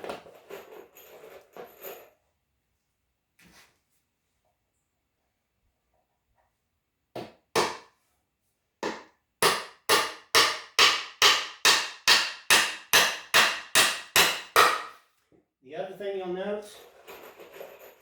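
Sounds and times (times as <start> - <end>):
hammer hitting nail into wood: 7.2 - 7.9, 8.8 - 15.0.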